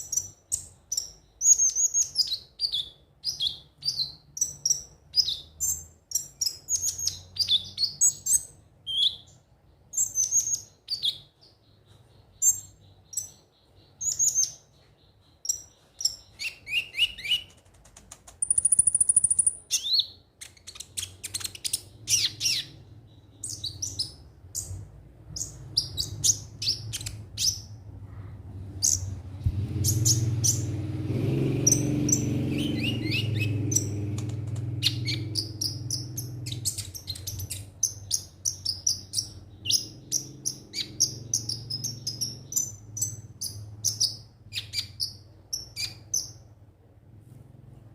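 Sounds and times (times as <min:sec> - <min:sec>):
bird singing high chirps: 0:00.0 - 0:17.6, 0:18.4 - 0:27.9, 0:28.7 - 0:46.5
low rumble: 0:27.2 - 0:36.7.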